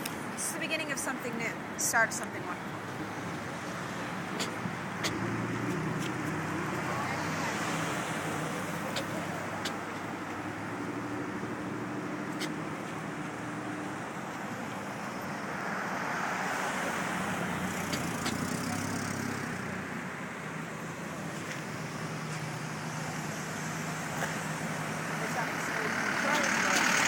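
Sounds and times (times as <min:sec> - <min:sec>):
traffic noise: 0:00.0 - 0:27.0
engine running steadily: 0:16.7 - 0:27.0.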